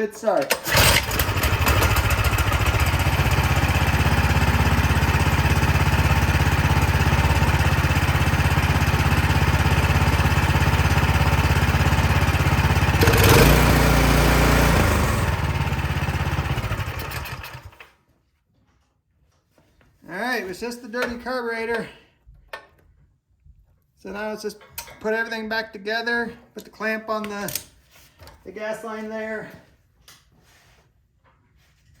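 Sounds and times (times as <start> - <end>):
snow blower engine running: 0.5 - 17.9.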